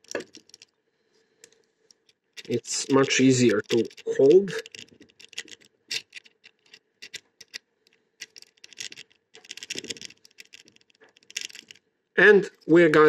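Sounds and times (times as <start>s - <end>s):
key rattling in a lock: 0.0s - 0.7s, 2.0s - 7.6s, 8.2s - 11.8s.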